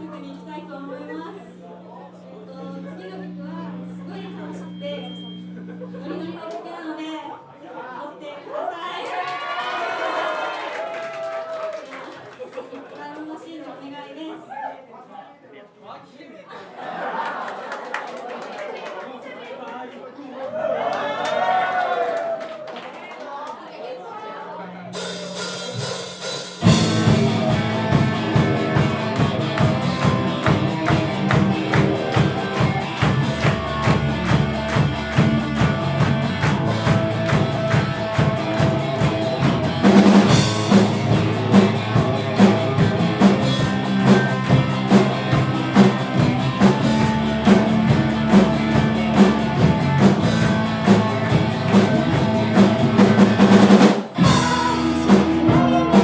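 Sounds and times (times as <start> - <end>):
rock band playing: 24.8 - 56.0.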